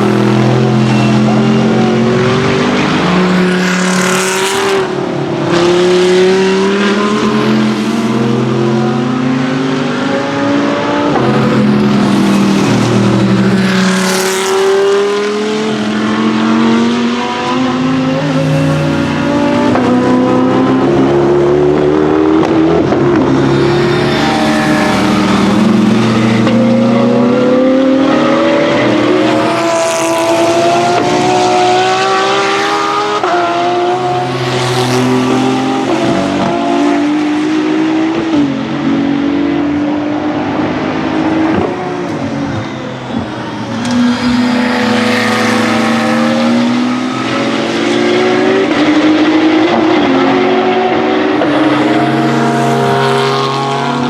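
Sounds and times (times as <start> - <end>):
race car engines passing: 0.0 - 54.0.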